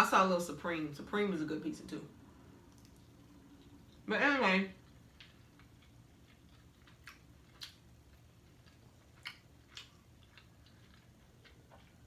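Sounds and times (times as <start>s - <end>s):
faint chewing: 2.7s - 4.1s, 4.8s - 12.0s.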